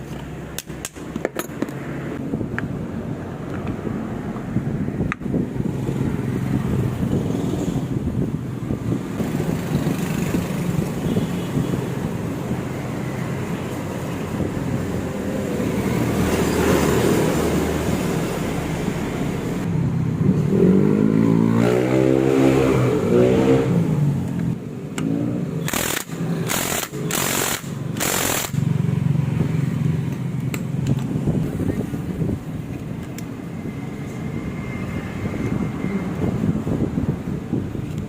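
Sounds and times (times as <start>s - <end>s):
motorcycle engine revving: 20.2s - 31.8s.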